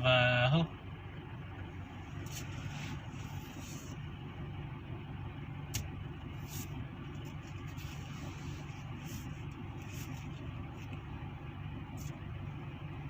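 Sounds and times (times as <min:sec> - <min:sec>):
car engine hum: 0:00.0 - 0:13.0
road noise: 0:00.0 - 0:13.0.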